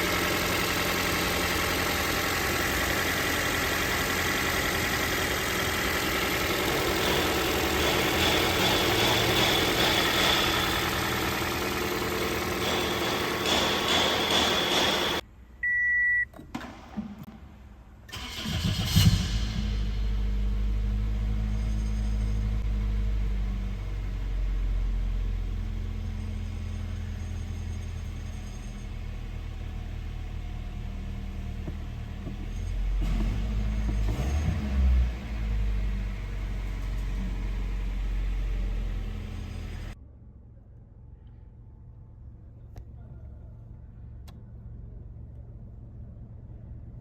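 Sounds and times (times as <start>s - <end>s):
car engine cranking and idling: 0.0s - 40.0s
short beep: 15.6s - 16.3s.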